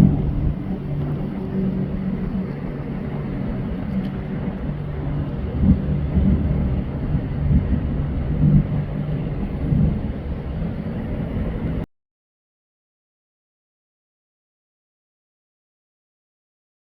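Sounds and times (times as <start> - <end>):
boat engines droning: 0.0 - 11.8.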